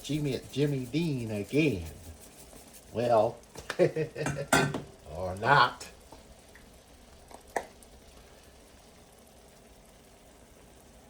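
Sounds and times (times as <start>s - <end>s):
faint kitchen hum: 0.0s - 11.0s
utensil clinking on cookware: 4.2s - 4.9s.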